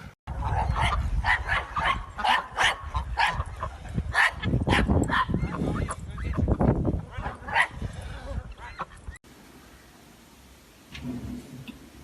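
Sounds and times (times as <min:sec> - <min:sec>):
dog barking and yipping: 0:00.4 - 0:05.6, 0:07.1 - 0:07.8.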